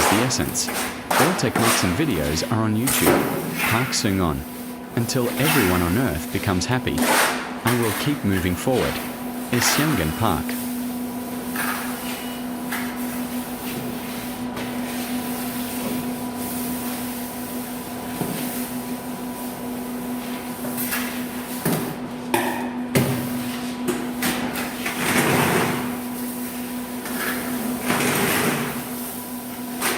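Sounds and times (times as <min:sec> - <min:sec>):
trowel scraping mortar: 0:00.0 - 0:04.4, 0:05.0 - 0:10.5
steady hum: 0:00.0 - 0:18.1.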